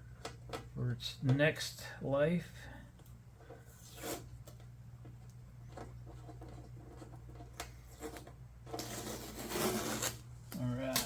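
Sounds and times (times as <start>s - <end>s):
steady low hum: 0.0s - 11.0s
hand rubbing and scraping: 3.4s - 11.0s.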